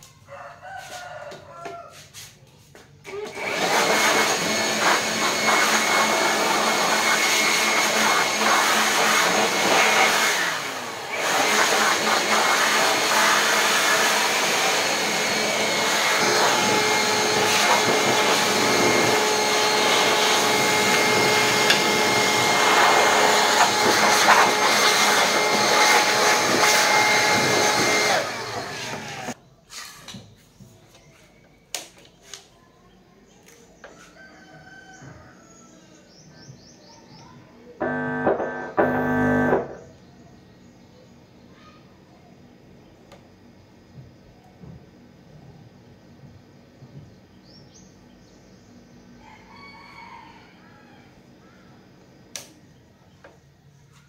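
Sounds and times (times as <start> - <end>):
electric blower motor whooshing: 3.1 - 29.4, 37.8 - 39.8.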